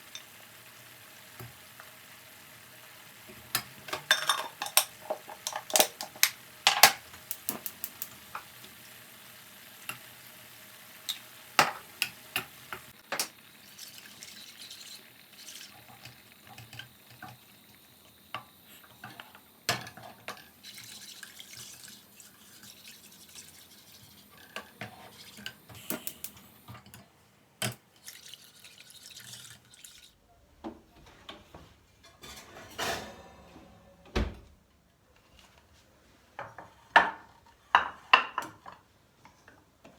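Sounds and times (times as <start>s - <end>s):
steady hiss: 0.0s - 27.5s
utensils and dishes clinking: 3.5s - 8.5s, 11.0s - 27.8s, 32.0s - 34.0s.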